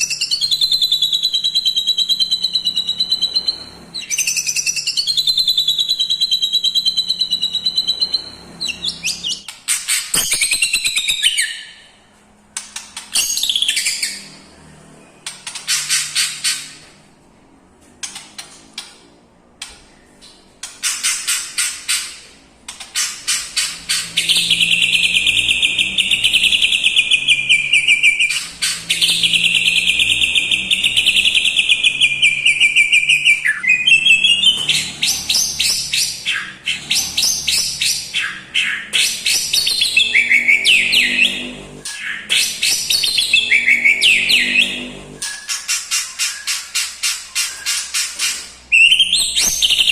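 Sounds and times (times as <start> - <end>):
bird singing with mimicked phrases: 0.0 - 11.8, 23.0 - 48.1.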